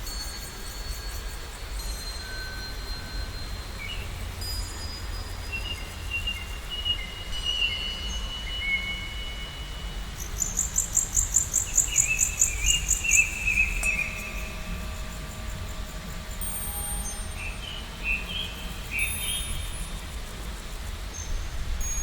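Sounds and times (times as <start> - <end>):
songbirds whistling: 10.3 - 14.9.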